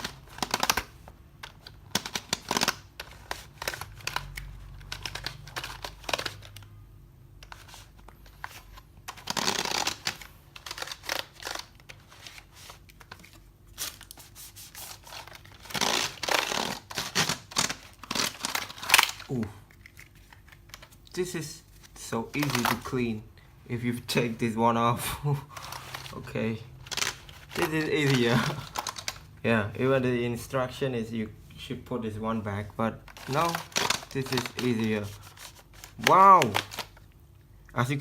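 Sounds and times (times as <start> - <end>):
sponge scrubbing keyboard: 14.2 - 15.2.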